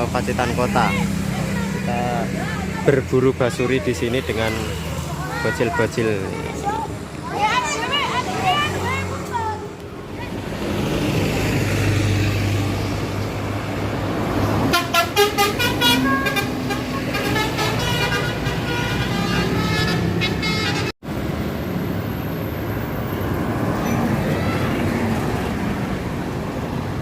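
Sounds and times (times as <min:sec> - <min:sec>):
bus engine: 0:00.0 - 0:27.0
road noise: 0:00.0 - 0:27.0
musical bus horn: 0:14.6 - 0:21.0.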